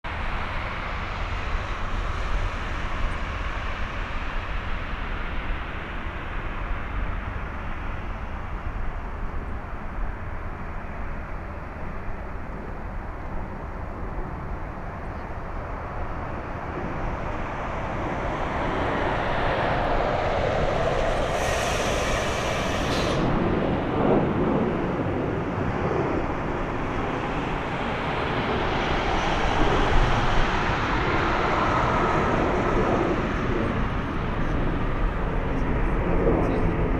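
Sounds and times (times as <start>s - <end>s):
jet airliner engine noise: 0.1s - 36.9s
low rumble: 14.8s - 34.7s
high whine: 14.9s - 32.4s.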